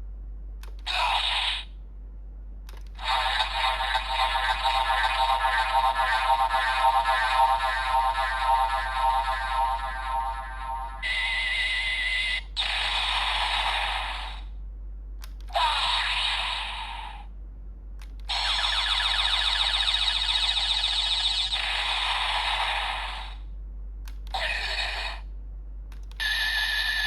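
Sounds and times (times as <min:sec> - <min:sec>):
toy electronic sound effects: 0:00.9 - 0:01.7, 0:03.0 - 0:14.4, 0:15.5 - 0:17.2, 0:18.3 - 0:23.4, 0:24.4 - 0:25.2, 0:26.2 - 0:27.0
fast repeating rattle: 0:03.0 - 0:11.3, 0:18.3 - 0:23.4.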